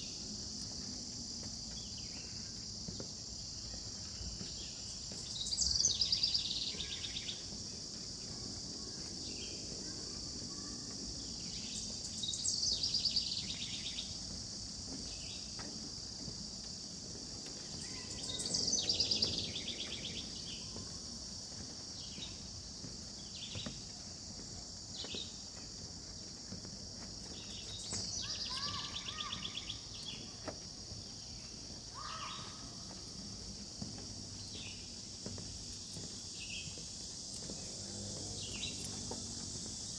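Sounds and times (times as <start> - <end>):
chorus of insects: 0.0 - 39.9.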